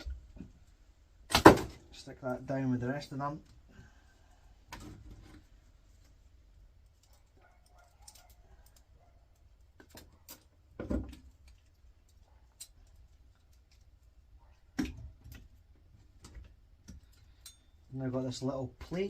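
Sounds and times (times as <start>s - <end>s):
small parts clicking and tapping: 5.9s - 17.9s.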